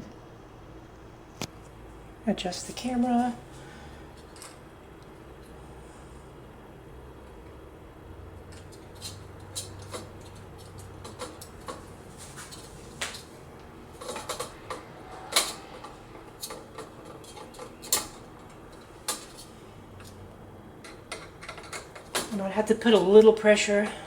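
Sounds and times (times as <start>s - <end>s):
metal clicks and taps: 20.8s - 22.3s.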